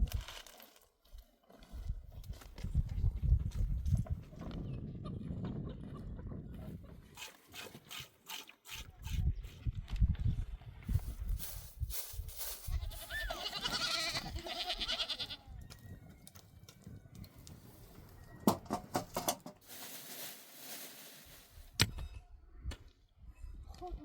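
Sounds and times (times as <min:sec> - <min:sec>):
wavering sheep or goat bleat: 0:12.7 - 0:15.4
rustling: 0:19.6 - 0:21.8.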